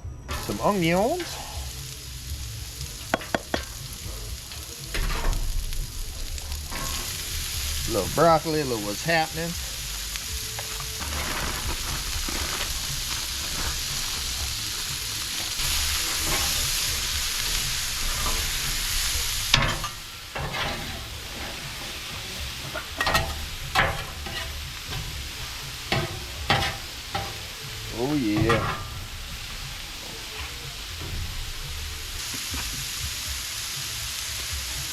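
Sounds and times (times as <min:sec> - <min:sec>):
vegetables sizzling in oil: 0:00.3 - 0:34.9
metal spatulas scraping griddle: 0:18.0 - 0:25.2, 0:25.9 - 0:27.4.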